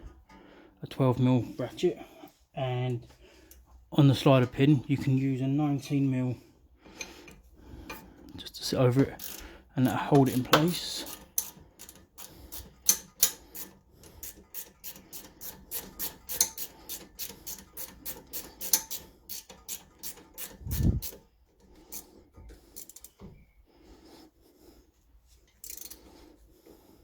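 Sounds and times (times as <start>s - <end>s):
ratchet wrench clicking: 9.2s - 9.4s, 11.0s - 21.2s, 22.8s - 23.2s, 25.6s - 26.0s.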